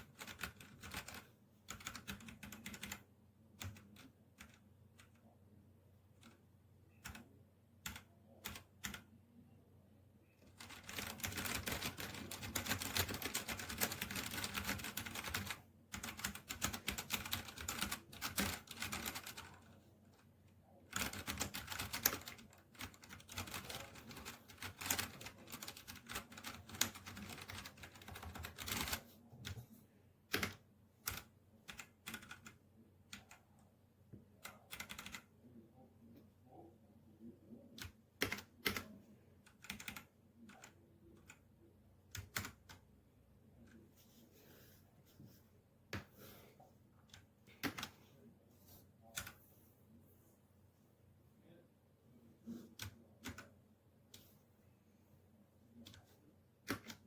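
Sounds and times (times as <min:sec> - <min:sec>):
mechanical keyboard typing: 0:00.0 - 0:03.0, 0:03.6 - 0:05.2, 0:07.0 - 0:09.1, 0:10.5 - 0:19.6, 0:20.9 - 0:29.6, 0:30.3 - 0:33.4, 0:34.4 - 0:35.3, 0:37.8 - 0:38.9, 0:39.5 - 0:41.4, 0:42.1 - 0:42.8, 0:47.1 - 0:48.0, 0:52.8 - 0:53.5, 0:55.8 - 0:57.0.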